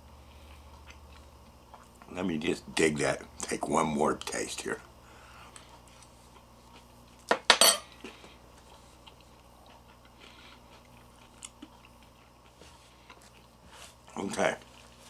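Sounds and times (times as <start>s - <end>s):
metal utensil clinking on bowl: 7.5s - 7.8s.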